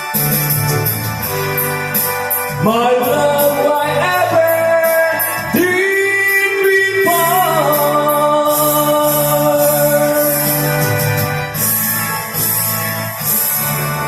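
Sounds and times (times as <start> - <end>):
keyboard backing with beat: 0.0 - 14.0
person singing long notes: 2.6 - 11.0.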